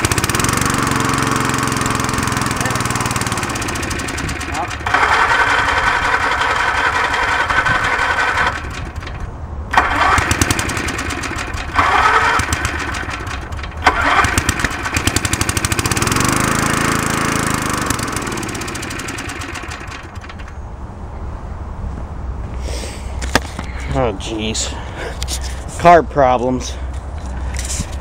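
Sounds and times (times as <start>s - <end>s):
electric starter cranking engine: 0.0s - 20.6s
lawn mower engine sputtering: 0.0s - 20.6s.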